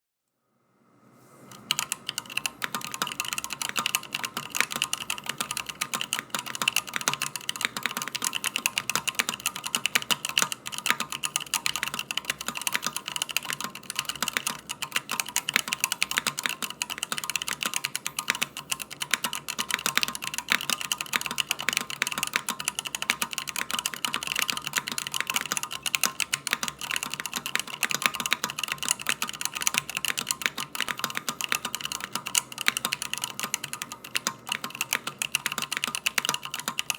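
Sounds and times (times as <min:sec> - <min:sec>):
fast typing on mechanical keyboard: 0:01.5 - 0:36.9.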